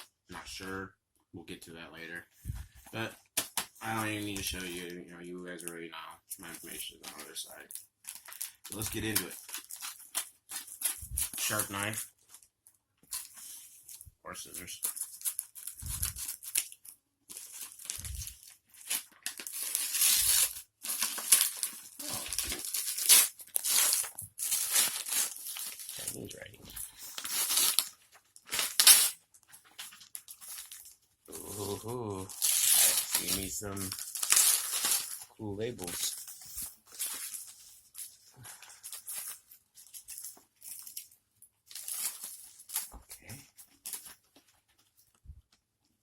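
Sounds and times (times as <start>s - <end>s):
cardboard packaging rustling: 6.4s - 12.5s, 14.6s - 45.2s
cardboard box tape tearing: 17.3s - 26.2s, 27.1s - 29.2s, 31.4s - 35.2s.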